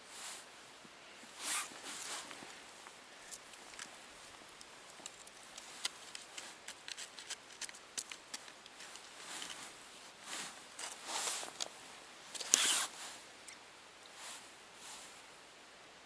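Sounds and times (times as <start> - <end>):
soft rustling hiss: 0.0 - 16.0
faint clicks and ticks: 2.8 - 9.6.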